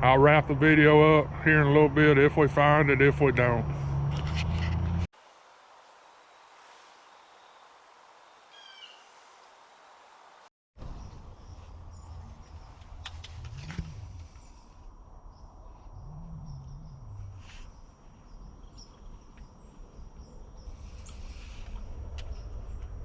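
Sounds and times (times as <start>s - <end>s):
short bird chirps: 8.5s - 9.2s
low rumble: 10.8s - 23.0s.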